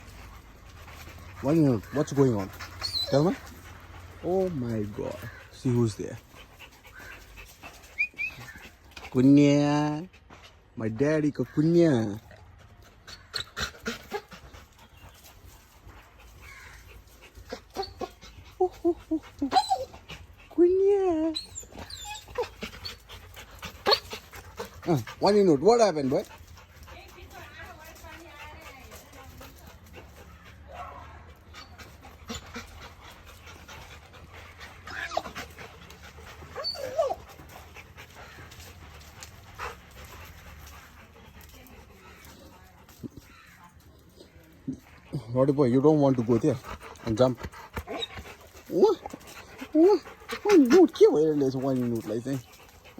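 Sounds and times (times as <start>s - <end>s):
dog whimpering: 1.4s - 3.6s, 17.5s - 23.1s, 34.8s - 38.6s, 47.9s - 52.5s
dog whining: 1.8s - 3.6s, 17.6s - 20.1s, 20.9s - 23.1s, 36.4s - 37.6s.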